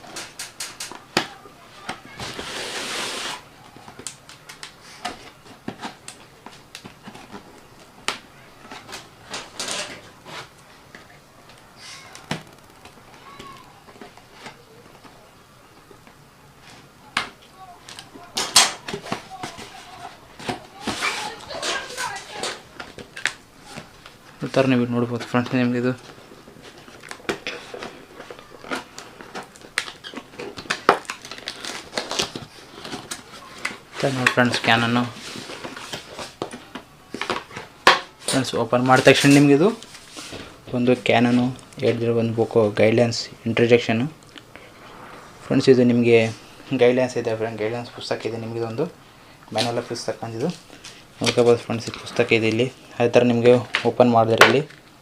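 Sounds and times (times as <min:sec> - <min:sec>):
packaging rustling and clicking: 0:25.2 - 0:40.5.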